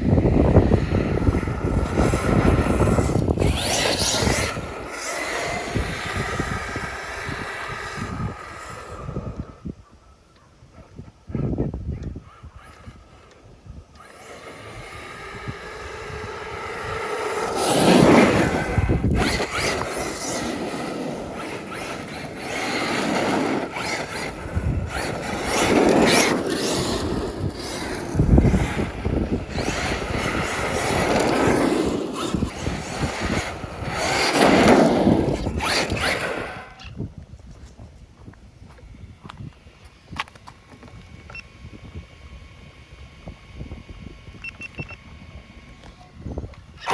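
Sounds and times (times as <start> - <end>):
rc truck motor whine: 0.0 - 46.9
tyre noise on ground: 16.2 - 41.1.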